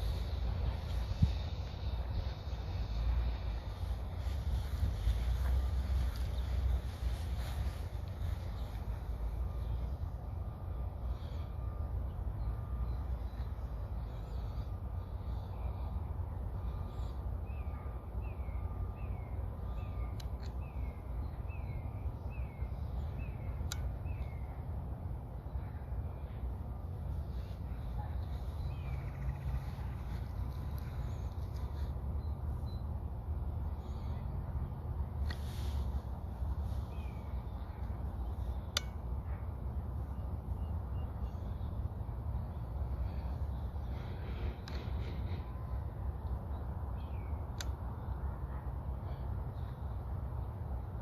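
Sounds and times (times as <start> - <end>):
faint bird chirps: 0.0 - 33.0
sharp clicks: 47.5 - 47.8.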